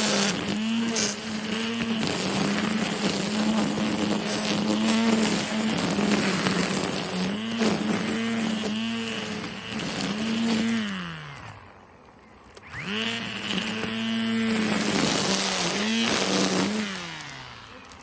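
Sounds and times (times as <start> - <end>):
string trimmer cutting grass: 0.0 - 18.0.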